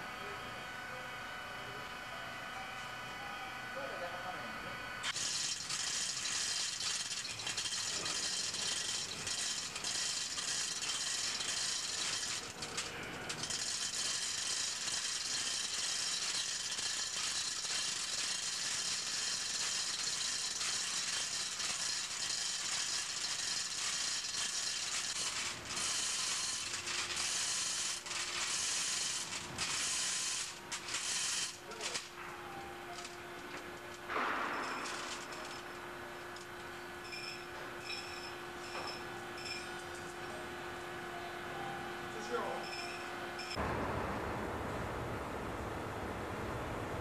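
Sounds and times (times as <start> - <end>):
mechanical ratchet-like rattling: 5.1 - 32.0.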